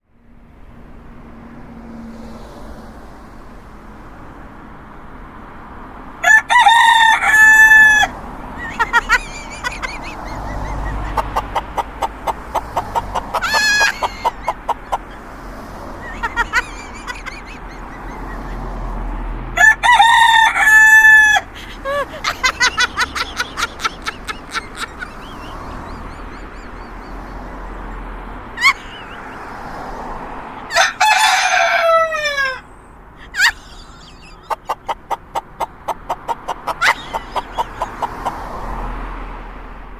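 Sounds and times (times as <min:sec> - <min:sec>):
rooster crowing: 0:06.2 - 0:15.2, 0:16.0 - 0:18.3, 0:19.6 - 0:26.0, 0:30.7 - 0:32.7, 0:36.5 - 0:38.4
rooster clucking: 0:06.2 - 0:18.9, 0:19.6 - 0:29.8, 0:30.4 - 0:38.8.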